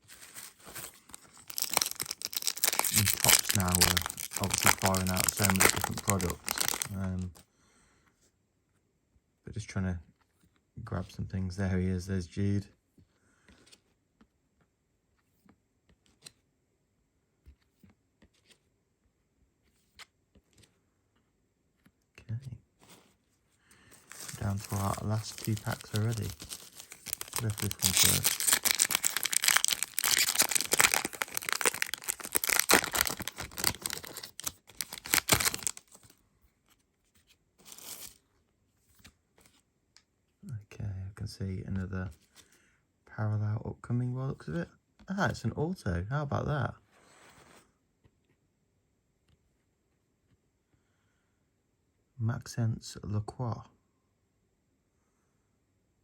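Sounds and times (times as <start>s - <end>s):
wrapper tearing and crinkling: 0.0s - 7.3s, 24.0s - 36.1s, 37.6s - 38.2s
cards rustling: 0.0s - 7.4s, 23.7s - 36.2s, 37.6s - 38.2s.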